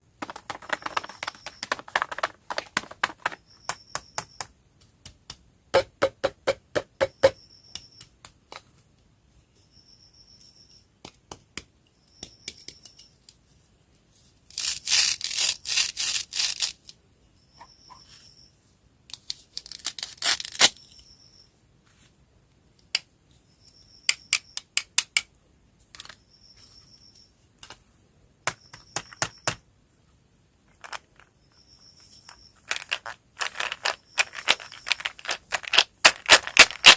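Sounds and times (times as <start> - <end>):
loud rustling of packaging: 0.2 - 3.4, 32.6 - 36.9
snack packaging crinkling: 0.2 - 3.4, 30.8 - 31.3, 32.6 - 36.9.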